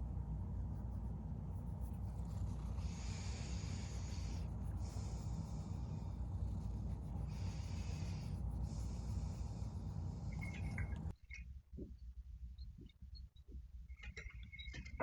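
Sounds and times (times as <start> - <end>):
cat purring: 0.5 - 11.1.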